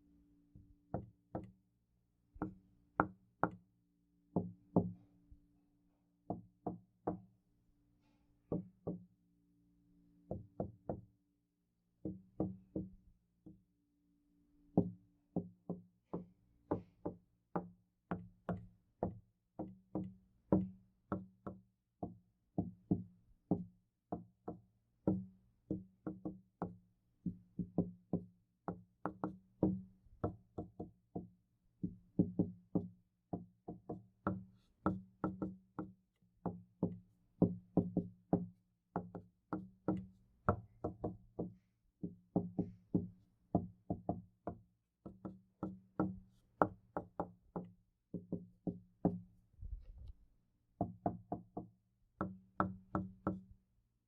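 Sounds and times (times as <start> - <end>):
knocking on a door: 12.0 - 13.0, 31.9 - 44.2, 45.0 - 49.8, 50.8 - 53.4.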